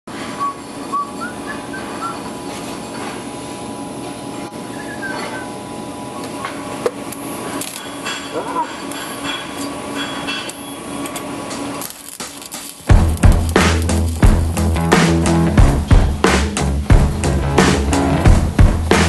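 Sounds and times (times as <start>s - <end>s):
short squeaks: 4.7s - 5.6s.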